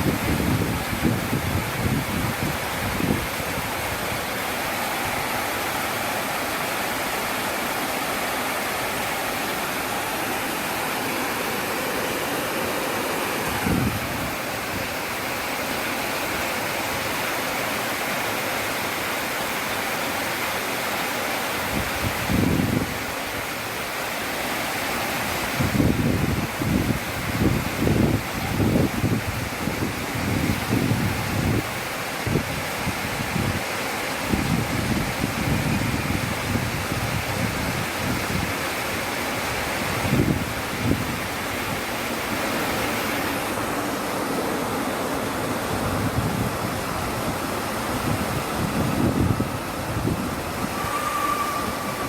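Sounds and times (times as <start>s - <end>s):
wind buffeting microphone: 0.0s - 5.3s, 13.1s - 15.3s, 21.6s - 23.2s, 25.3s - 52.0s
outdoor rushing noise: 40.1s - 52.0s.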